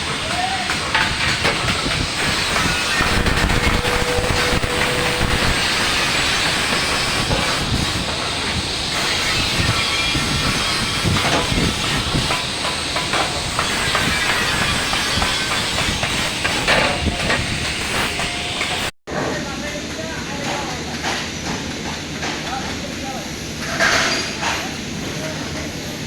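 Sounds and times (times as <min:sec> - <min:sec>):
electric welding arc crackling: 0:01.2 - 0:18.9.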